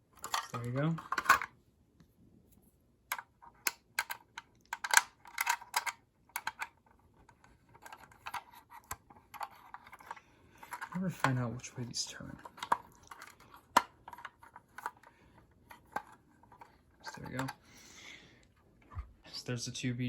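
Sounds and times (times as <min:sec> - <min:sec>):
plastic and metal clicks: 0:03.1 - 0:11.4.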